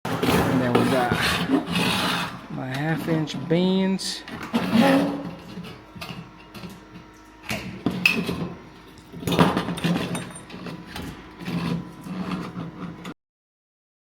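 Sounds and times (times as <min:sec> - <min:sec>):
steady low hum: 0:00.1 - 0:13.1.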